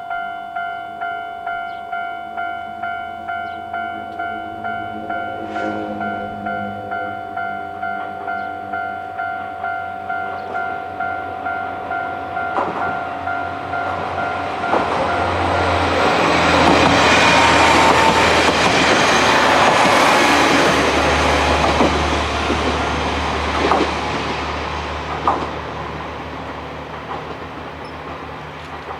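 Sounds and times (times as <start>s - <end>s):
level crossing alarm ringing: 0.0s - 22.8s
electric train passing: 0.0s - 28.9s
train wheel clacks: 12.4s - 13.1s, 13.7s - 28.9s.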